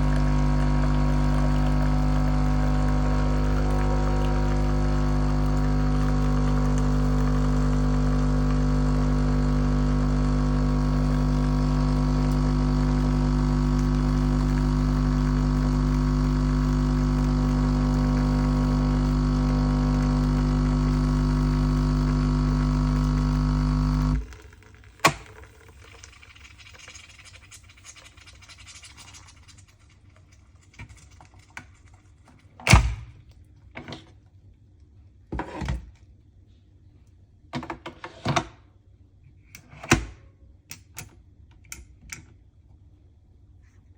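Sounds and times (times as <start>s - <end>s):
coffee machine pump humming: 0.0s - 27.2s.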